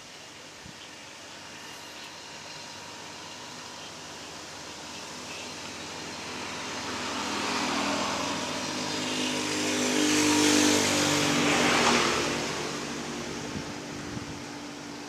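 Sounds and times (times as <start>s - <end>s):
motor vehicle passing by: 4.7s - 15.0s.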